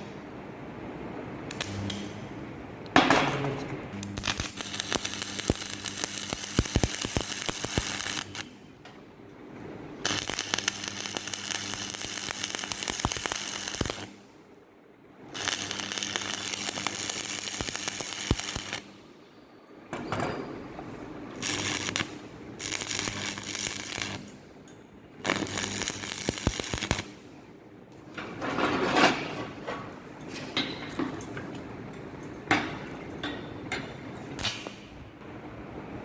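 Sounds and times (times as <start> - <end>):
steady low hum: 0.0 - 30.2
welding arc crackling and sizzling: 1.5 - 2.4, 3.9 - 8.8, 9.7 - 14.4, 15.3 - 19.2, 21.3 - 24.5, 25.2 - 27.4, 34.4 - 35.0.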